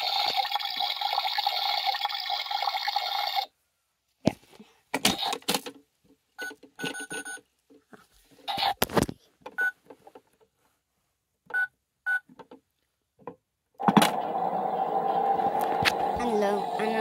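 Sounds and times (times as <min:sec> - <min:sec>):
small toy motor whirring: 0:00.0 - 0:03.5.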